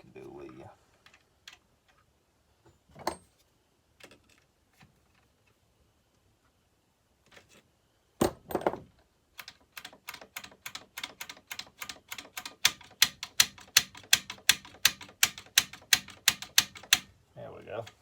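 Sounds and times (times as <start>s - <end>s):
sharp mechanical clicks: 9.4s - 17.1s.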